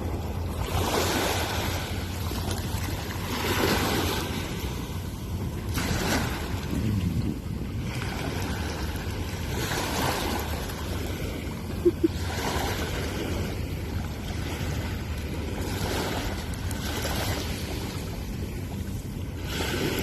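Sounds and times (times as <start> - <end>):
sea waves washing in: 0.0 - 20.0
wind rumbling on microphone: 0.0 - 20.0.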